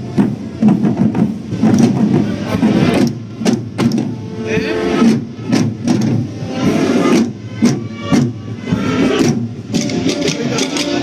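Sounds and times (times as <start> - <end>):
drum corps playing a march: 0.0 - 11.0.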